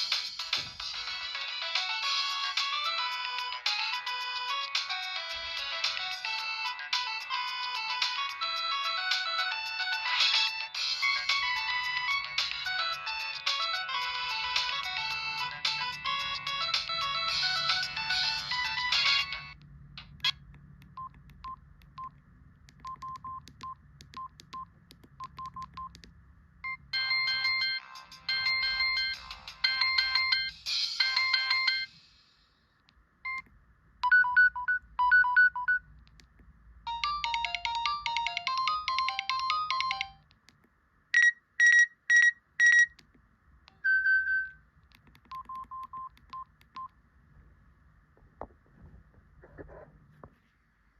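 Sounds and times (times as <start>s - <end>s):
phone ringtone beeps: 26.6s - 31.9s, 34.0s - 35.8s, 36.9s - 40.2s, 41.2s - 43.0s, 43.8s - 44.6s.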